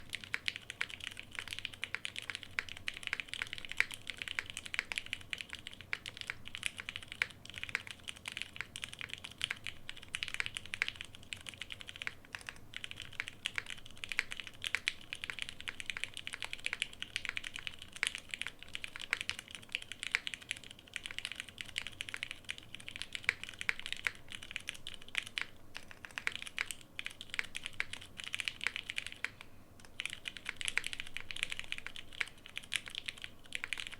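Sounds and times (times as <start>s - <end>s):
mechanical keyboard typing: 0.0s - 33.9s.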